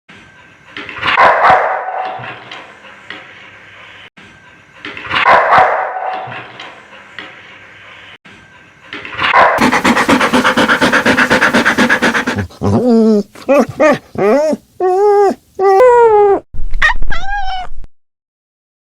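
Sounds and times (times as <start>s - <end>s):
dog barking: 1.2s - 2.2s, 5.2s - 6.3s, 9.3s - 12.5s
fast evenly pulsing sound: 9.6s - 12.5s
dog whining: 9.6s - 17.6s.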